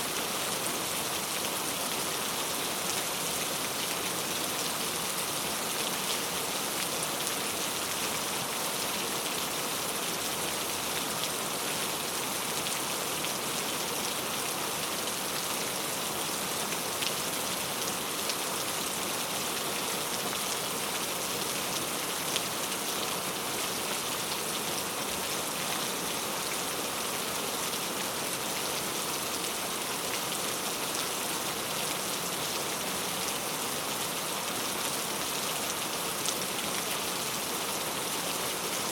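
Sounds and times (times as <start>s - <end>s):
heavy rain on hard surfaces: 0.0s - 38.9s.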